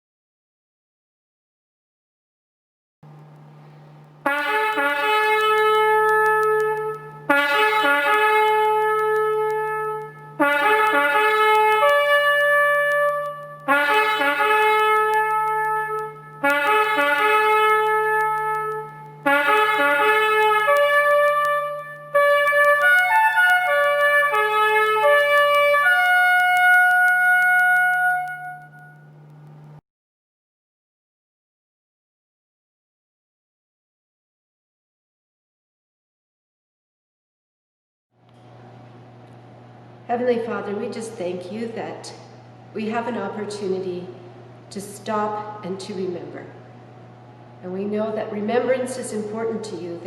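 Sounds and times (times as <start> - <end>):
low hum: 3.1 - 29.8
trumpet playing bugle call: 4.2 - 29.1.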